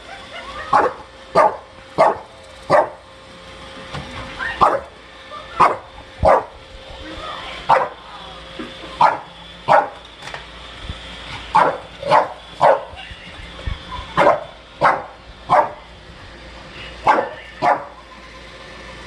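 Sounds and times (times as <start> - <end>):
dog barking: 0.7 - 3.0, 4.6 - 4.9, 5.6 - 6.5, 7.7 - 8.0, 9.0 - 10.0, 11.5 - 12.9, 14.2 - 15.8, 17.0 - 17.9.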